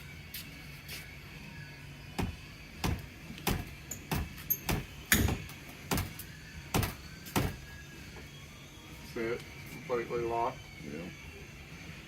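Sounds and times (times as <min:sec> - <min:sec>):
stiff bus door knocking and clunking: 0:02.2 - 0:07.6.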